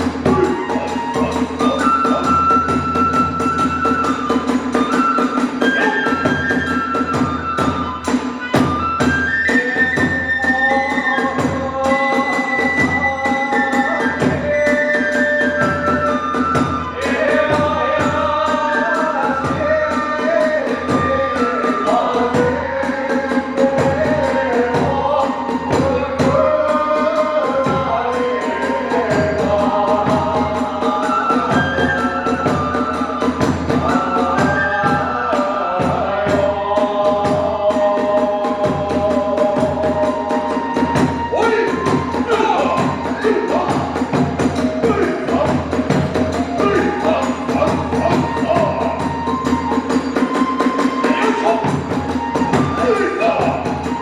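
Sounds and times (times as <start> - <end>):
bamboo flute melody: 0.0 - 54.0
steady drum beats: 0.0 - 54.0.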